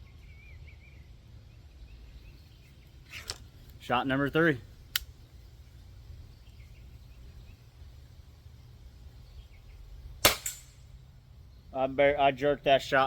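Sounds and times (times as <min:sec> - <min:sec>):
faint bird chirps: 0:00.0 - 0:03.3
low steady rumble: 0:00.0 - 0:13.0.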